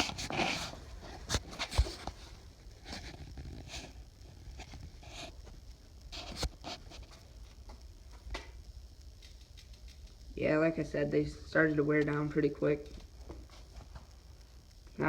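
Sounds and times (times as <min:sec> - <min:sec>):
soft rustles: 0:00.0 - 0:07.7, 0:12.9 - 0:14.2.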